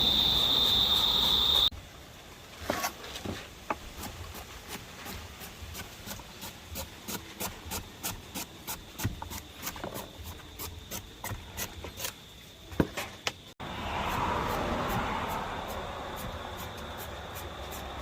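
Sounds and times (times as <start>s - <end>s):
steady hiss: 0.0s - 9.7s.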